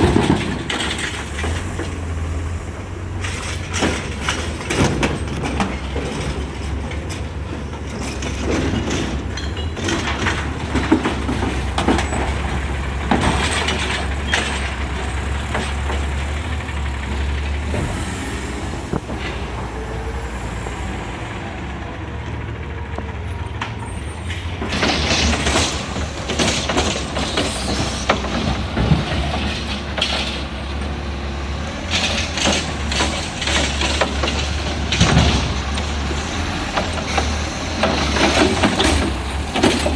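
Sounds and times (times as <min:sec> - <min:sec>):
garbage truck engine running: 0:00.0 - 0:39.9
side loader clatter and hiss: 0:00.0 - 0:39.9.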